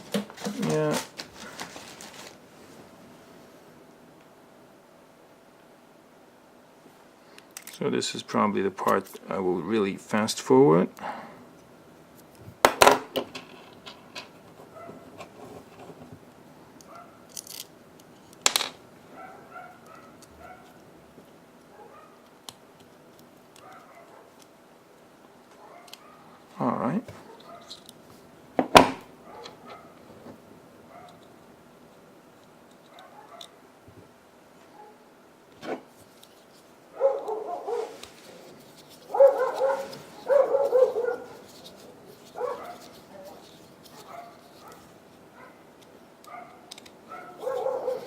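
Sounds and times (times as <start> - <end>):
metal parts clicking and clattering: 17.3 - 17.7.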